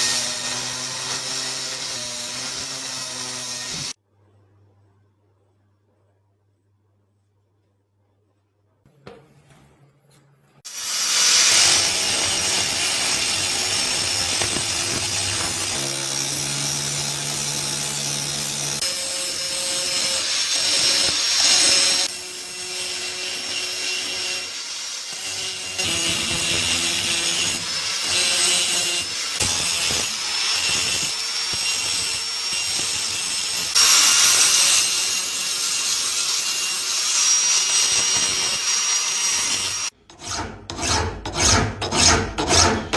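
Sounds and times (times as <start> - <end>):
power tool whining: 10.7 - 39.9.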